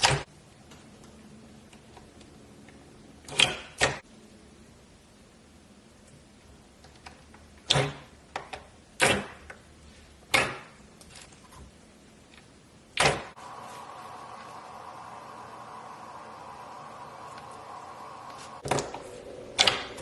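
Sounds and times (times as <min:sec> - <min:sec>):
steady hum: 0:13.3 - 0:20.0.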